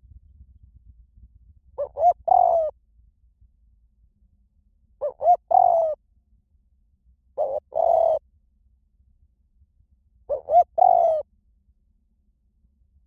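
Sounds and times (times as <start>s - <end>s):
dove cooing: 1.8s - 2.7s, 5.0s - 6.0s, 7.4s - 8.2s, 10.3s - 11.2s.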